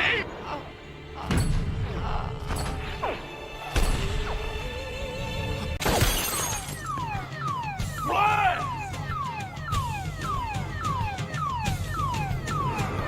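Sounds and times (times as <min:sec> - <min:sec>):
film music: 0:00.0 - 0:13.0
glass shattering: 0:05.8 - 0:07.0.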